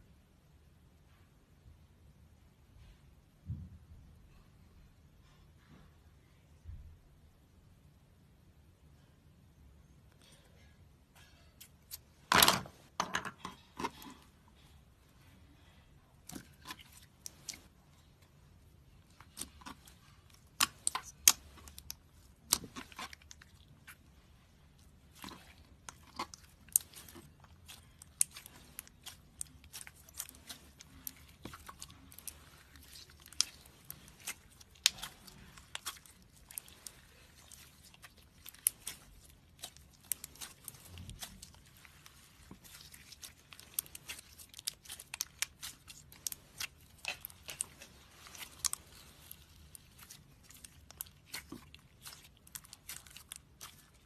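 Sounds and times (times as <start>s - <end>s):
slime squished with sticky pops: 19.0s - 54.0s.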